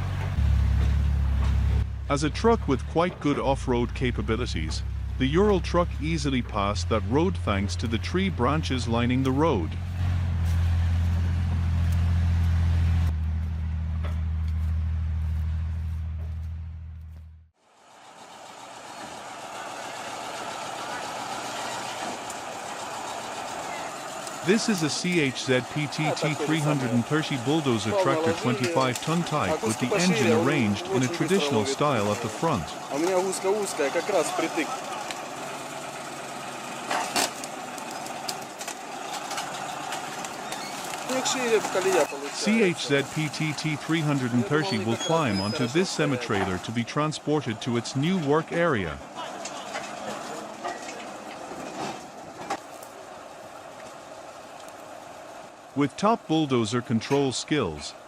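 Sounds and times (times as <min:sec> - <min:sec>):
diesel truck engine droning: 0:00.0 - 0:58.0.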